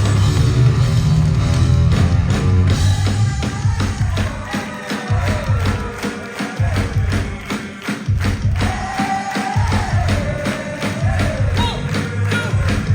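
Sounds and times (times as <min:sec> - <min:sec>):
live rock band playing: 0:00.0 - 0:04.2
driving drum beat: 0:00.0 - 0:12.9.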